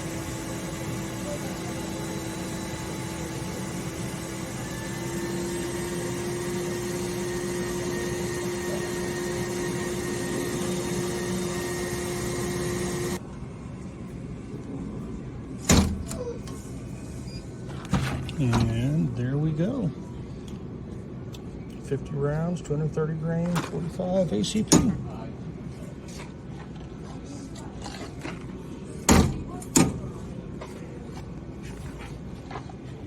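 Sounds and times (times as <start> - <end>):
vending machine mechanism whirring: 0.0 - 13.2, 15.4 - 19.2.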